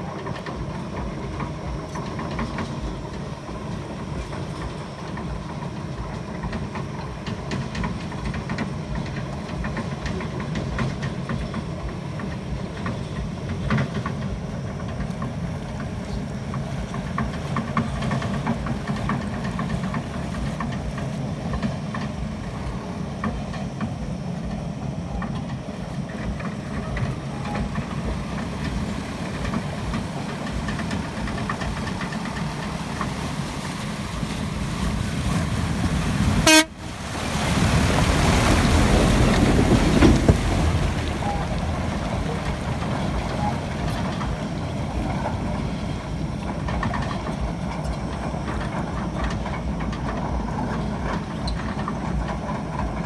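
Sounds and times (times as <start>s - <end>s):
diesel machinery engine rumbling: 0.0s - 53.0s.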